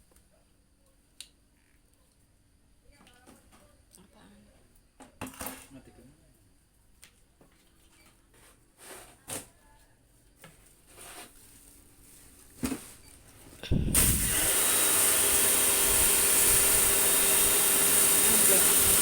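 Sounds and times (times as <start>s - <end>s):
electric machine running with hiss: 13.9s - 19.0s.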